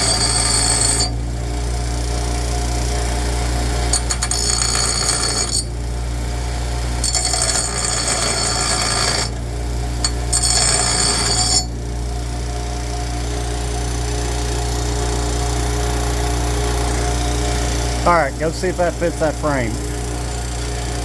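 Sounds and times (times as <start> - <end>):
power grinder on metal: 0.0 - 1.2, 3.8 - 5.7, 7.0 - 11.7
steady low hum: 9.3 - 21.0.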